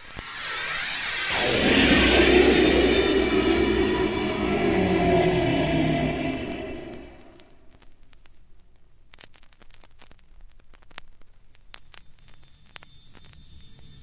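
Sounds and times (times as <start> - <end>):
low hum: 0.0 - 7.6.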